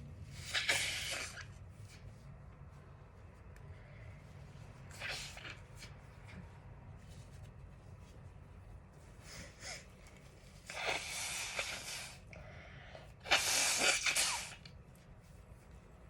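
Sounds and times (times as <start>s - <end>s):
person sneezing: 13.3s - 14.6s.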